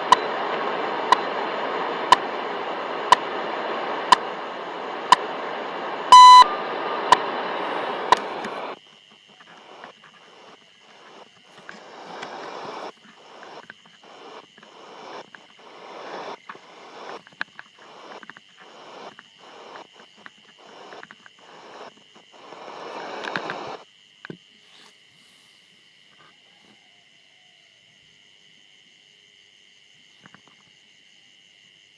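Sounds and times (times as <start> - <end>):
thin high whine: 0.0 - 8.8, 9.4 - 23.8
radio static bursts: 0.0 - 23.8
radio tuning clicks: 0.0 - 23.8
faint steady hiss: 0.0 - 31.9.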